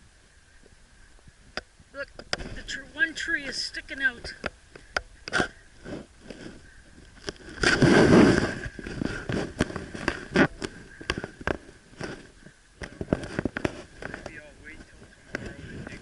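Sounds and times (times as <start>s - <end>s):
footsteps crunching in snow: 5.4s - 14.2s.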